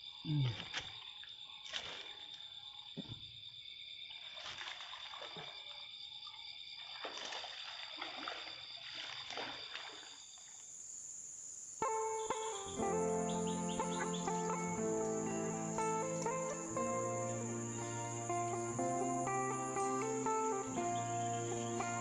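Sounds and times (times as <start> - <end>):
water splashing: 4.3 - 5.6, 6.8 - 10.2
music: 11.8 - 22.0
high-pitched drone: 11.9 - 22.0.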